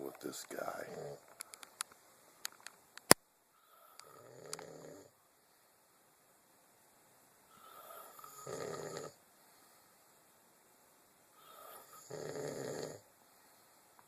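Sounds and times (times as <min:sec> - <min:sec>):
man snoring: 0:03.6 - 0:05.1, 0:07.6 - 0:09.2, 0:11.4 - 0:13.1.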